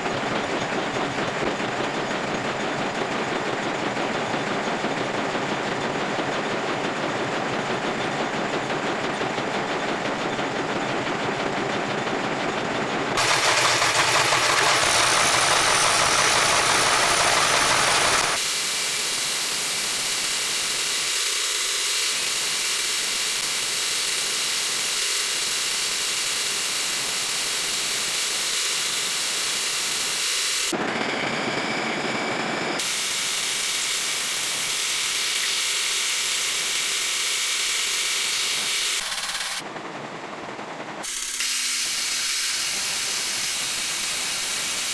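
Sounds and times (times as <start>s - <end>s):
metal lathe cutting steel: 13.2s - 18.4s, 32.8s - 39.6s, 41.0s - 44.9s.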